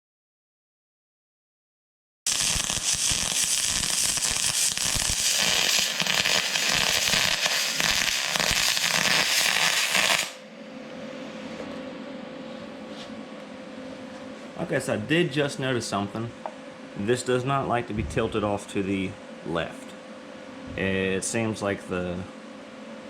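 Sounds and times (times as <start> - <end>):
welding arc crackling hiss: 2.3 - 10.4
machine hum: 10.4 - 23.0.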